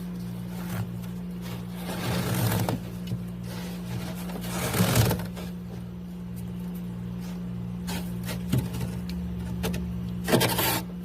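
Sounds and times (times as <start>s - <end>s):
steady low hum: 0.0s - 11.0s
loud rasping ice scrape: 1.5s - 2.9s, 3.5s - 5.5s, 10.3s - 10.9s.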